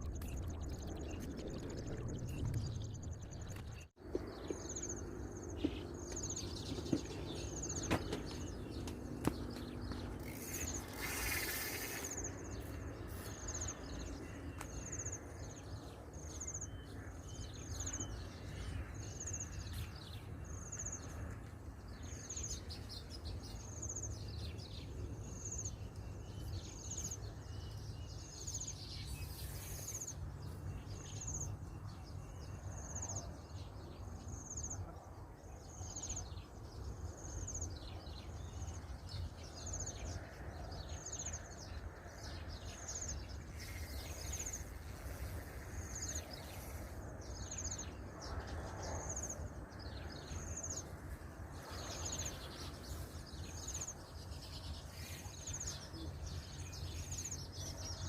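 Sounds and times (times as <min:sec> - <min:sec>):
steady low rumble: 0:00.0 - 0:10.2.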